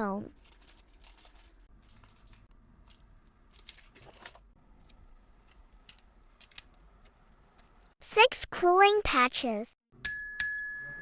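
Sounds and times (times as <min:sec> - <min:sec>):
packaging rustles and clicks: 0:00.4 - 0:04.5.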